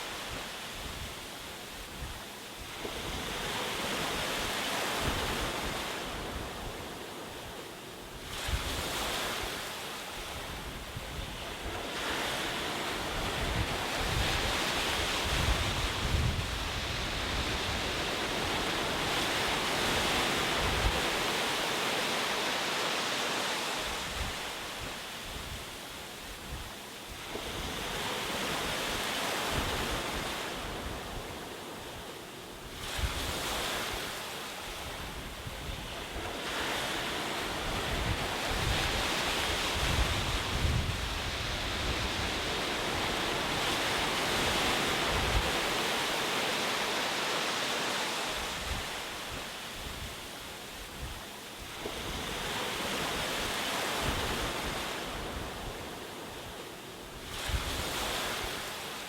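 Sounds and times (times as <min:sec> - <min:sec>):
ocean waves breaking on shore: 0:00.0 - 0:59.0
wind rumbling on microphone: 0:08.2 - 0:21.5, 0:32.6 - 0:46.2, 0:57.2 - 0:58.8.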